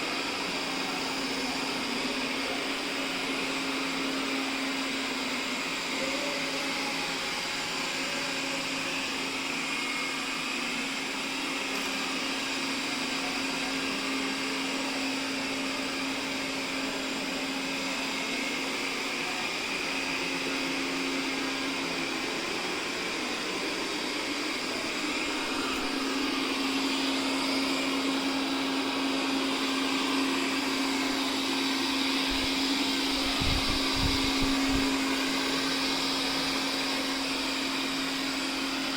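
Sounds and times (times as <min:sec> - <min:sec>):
robot vacuum cleaner humming: 0:00.0 - 0:38.9.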